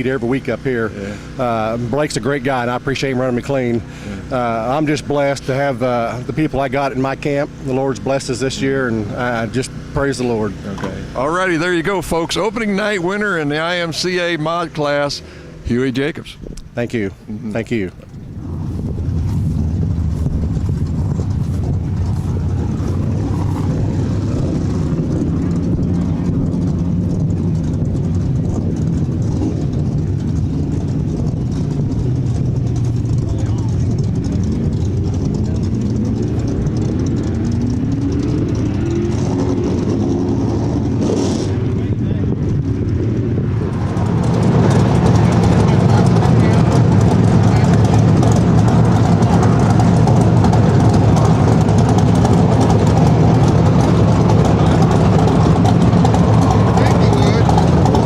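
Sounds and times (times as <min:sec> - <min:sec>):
race car engines droning: 0:00.0 - 0:58.0.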